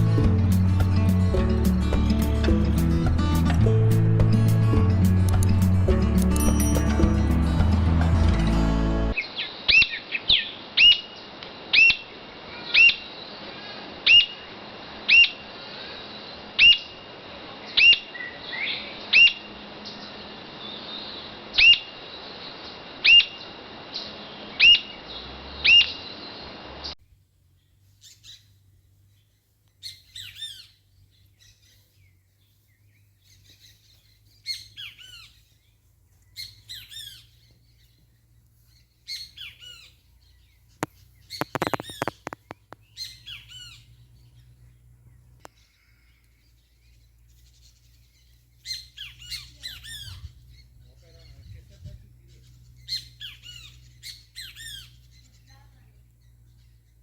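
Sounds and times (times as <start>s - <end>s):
quick bird chirps: 29.2s - 44.5s.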